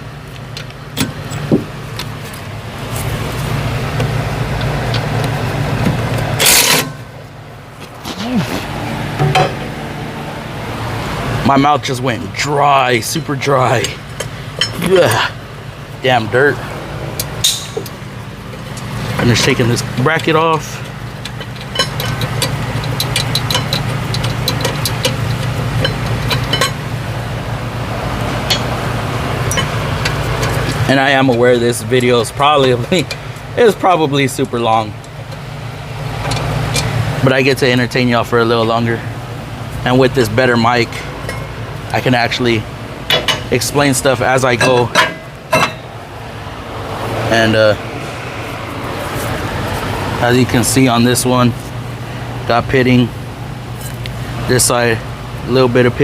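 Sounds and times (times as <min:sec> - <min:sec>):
steady low hum: 0:00.0 - 0:56.0
metal tools clinking: 0:13.1 - 0:15.3, 0:17.2 - 0:26.9, 0:28.4 - 0:28.8, 0:29.4 - 0:31.6, 0:40.9 - 0:41.6, 0:44.4 - 0:45.9.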